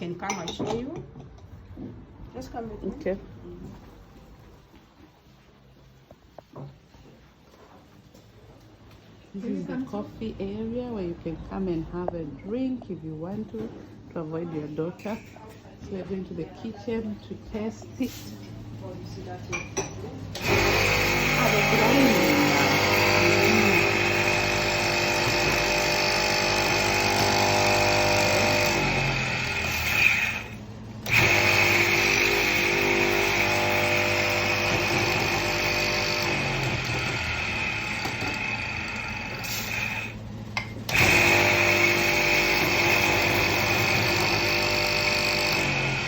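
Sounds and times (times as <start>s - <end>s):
electric coffee grinder running: 20.4s - 46.0s.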